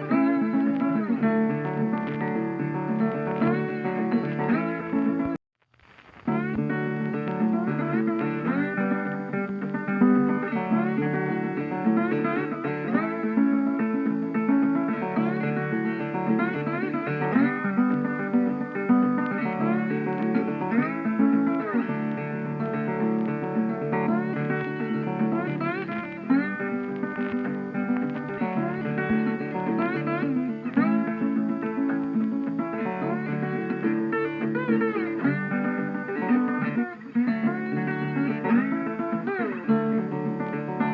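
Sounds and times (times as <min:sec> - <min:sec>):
guitar music with sliding notes: 0:00.0 - 0:40.9.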